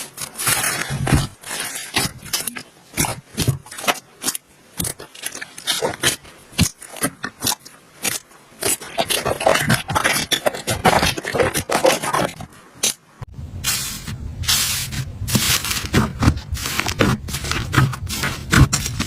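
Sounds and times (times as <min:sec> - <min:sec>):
slime popping and crackling: 0:00.2 - 0:13.0.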